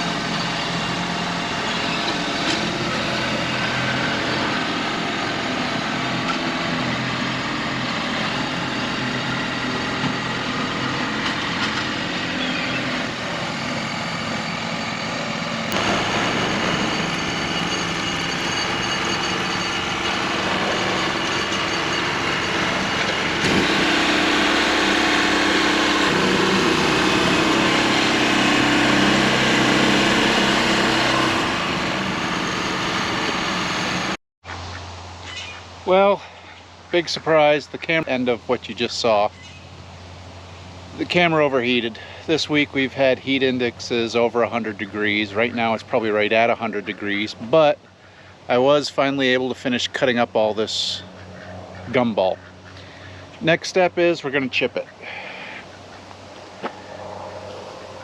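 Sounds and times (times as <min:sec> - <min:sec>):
small gas engine sawing logs: 0:00.0 - 0:34.2, 0:41.0 - 0:48.7.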